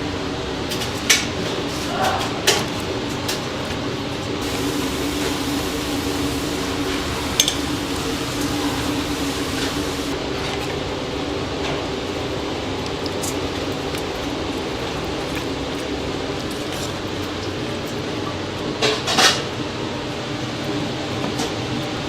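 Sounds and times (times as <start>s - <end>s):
kitchen machinery humming: 4.4s - 10.3s.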